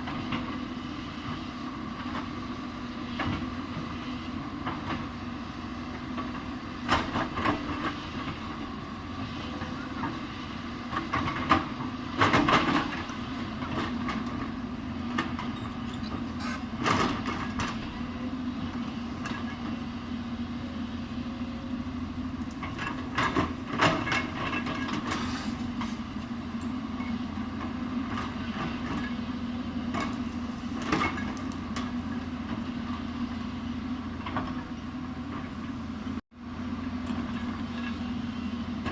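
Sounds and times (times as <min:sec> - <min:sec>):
excavator diesel engine running: 0:00.0 - 0:38.9
bucket clanking and scraping: 0:15.4 - 0:17.9, 0:23.1 - 0:26.1.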